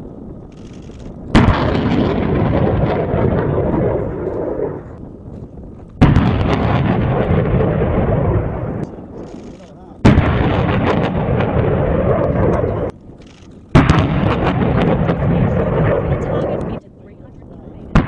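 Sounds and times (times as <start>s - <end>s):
rocket launch blast: 1.3s - 5.0s, 6.0s - 9.2s, 10.0s - 12.9s, 13.7s - 16.8s.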